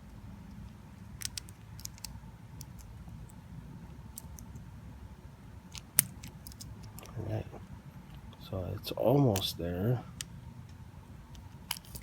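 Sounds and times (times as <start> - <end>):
low steady hum: 0.0 - 12.0
toy car parts clicking: 0.5 - 3.4, 4.1 - 4.6, 11.3 - 12.0.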